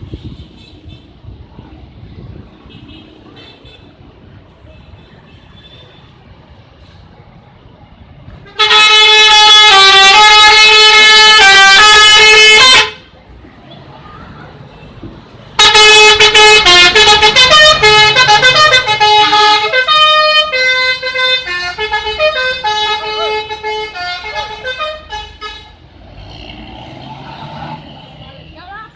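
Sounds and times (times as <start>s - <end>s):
multi-tone musical air horn: 8.5s - 13.0s, 15.6s - 25.8s.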